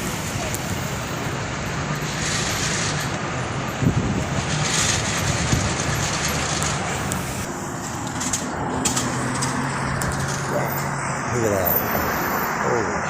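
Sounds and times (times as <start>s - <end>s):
heavy machinery engine running: 0.0s - 12.8s.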